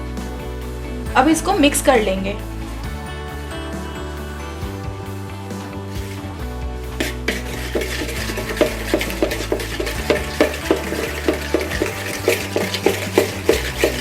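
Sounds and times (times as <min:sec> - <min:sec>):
utensil scraping and knocking bowl: 0:06.9 - 0:14.0.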